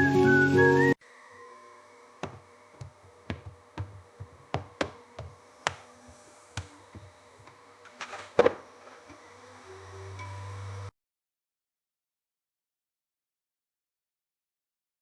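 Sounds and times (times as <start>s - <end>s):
faint steady hum: 0.9s - 10.9s
irregular knocks and taps: 2.2s - 5.8s.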